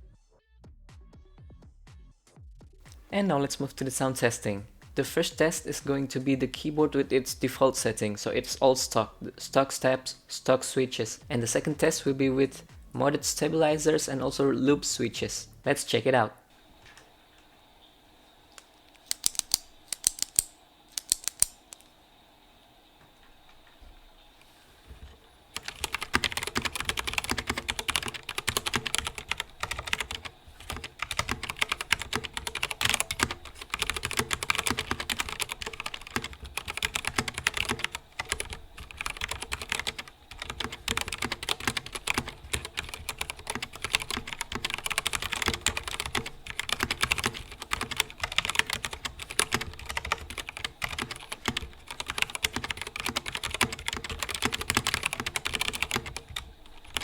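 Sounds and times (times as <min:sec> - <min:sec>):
fast typing on mechanical keyboard: 0:19.0 - 0:21.6, 0:25.6 - 0:57.0.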